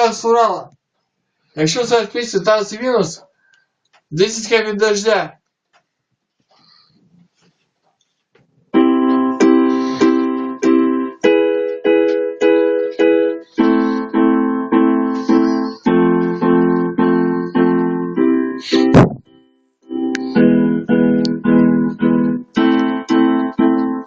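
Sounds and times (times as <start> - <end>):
keyboard chords: 8.7 - 24.0.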